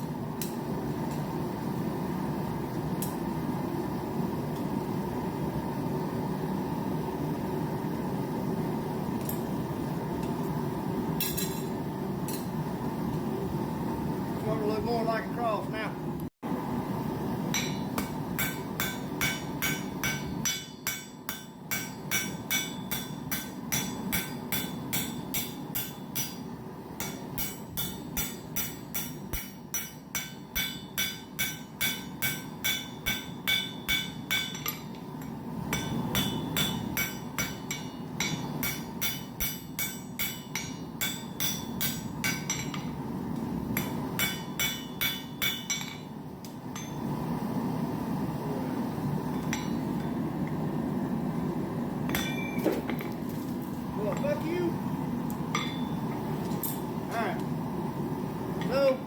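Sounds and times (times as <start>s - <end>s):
hammer ringing on anvil: 17.5s - 34.9s, 35.7s - 42.9s, 43.8s - 46.1s, 46.8s - 47.1s, 49.4s - 49.8s, 52.1s - 52.6s, 55.5s - 56.0s.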